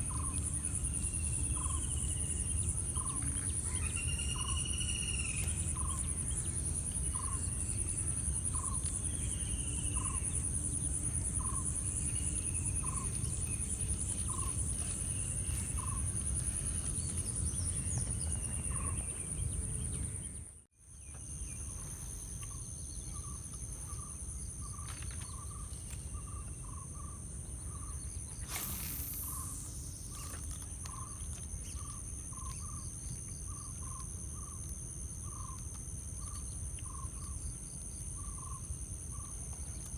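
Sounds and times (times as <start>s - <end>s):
insects shrilling: 0.1s - 6.5s, 28.2s - 32.0s.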